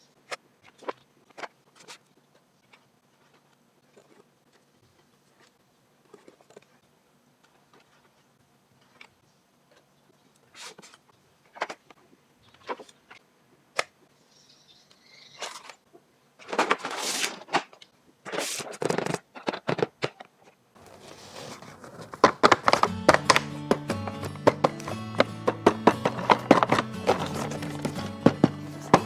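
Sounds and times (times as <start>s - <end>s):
packaging crinkling and scraping: 2.7s - 6.8s, 16.4s - 29.0s.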